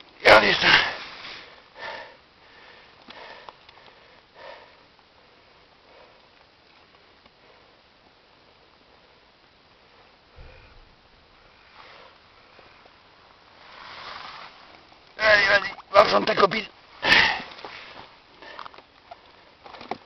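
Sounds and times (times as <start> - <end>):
faint sniffs and breaths: 0.8 - 6.4, 9.8 - 14.8, 17.0 - 19.6.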